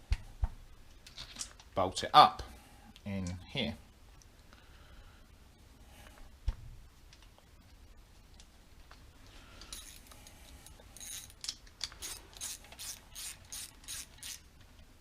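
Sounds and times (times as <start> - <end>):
hand ratchet clicking: 11.0 - 14.4.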